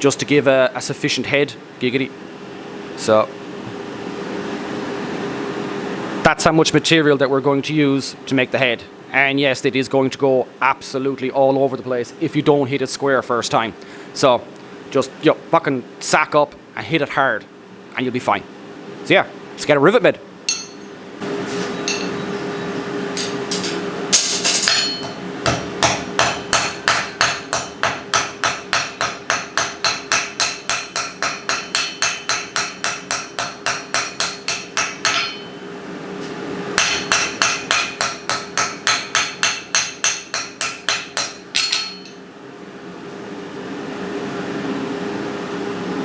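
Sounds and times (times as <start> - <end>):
steady hum: 18.0 - 44.3
hammer striking metal: 20.5 - 21.0, 21.8 - 22.2, 23.2 - 35.7, 36.8 - 42.2.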